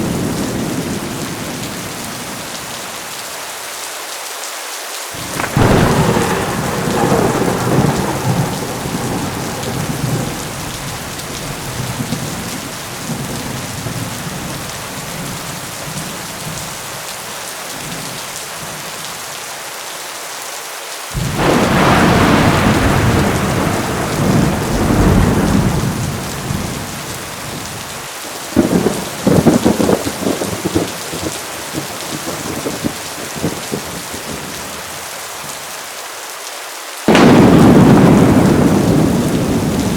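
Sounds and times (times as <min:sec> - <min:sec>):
heavy rain: 0:00.0 - 0:39.9
thunder rolling: 0:05.2 - 0:15.3, 0:21.2 - 0:27.9, 0:28.5 - 0:34.4, 0:37.1 - 0:39.9.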